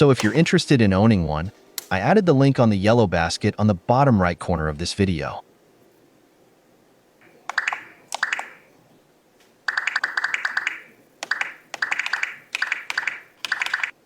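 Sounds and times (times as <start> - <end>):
mechanical keyboard typing: 7.2 - 8.7, 9.7 - 14.0.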